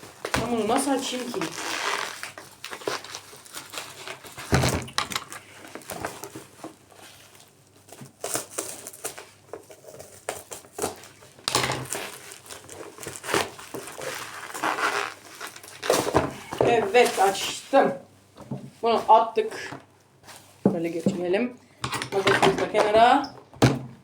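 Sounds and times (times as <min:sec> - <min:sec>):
paper packaging crinkling and tearing: 0:00.0 - 0:17.9.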